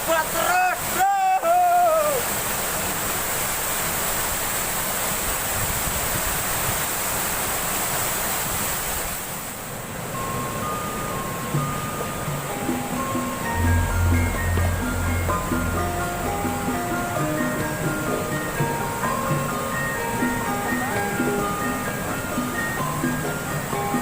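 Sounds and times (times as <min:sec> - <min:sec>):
voice: 0:00.0 - 0:02.2
flowing river water: 0:00.0 - 0:24.0
soft music tones: 0:10.0 - 0:24.0.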